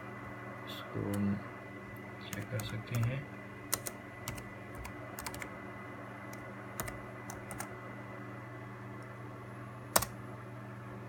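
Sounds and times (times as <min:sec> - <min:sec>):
steady low hum: 0:00.0 - 0:11.0
laptop keystrokes: 0:03.7 - 0:05.5, 0:06.3 - 0:07.7, 0:09.9 - 0:10.2.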